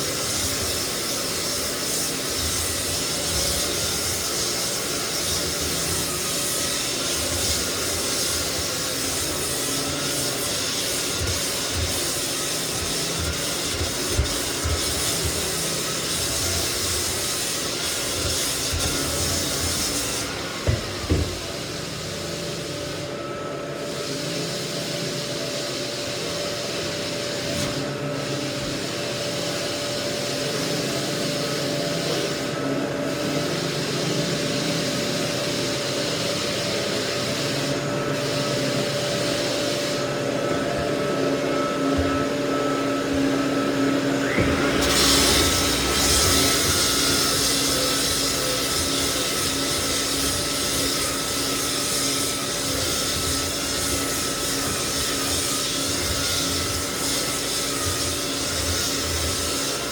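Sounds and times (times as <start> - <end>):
floor sander dust-fan whine: 0.0 - 59.9
abrasive rasping on wood: 0.1 - 20.3, 44.6 - 59.9.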